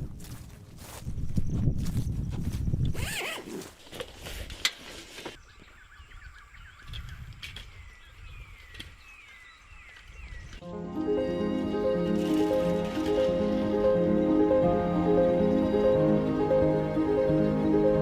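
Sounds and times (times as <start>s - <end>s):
small birds chirping: 5.4s - 10.6s.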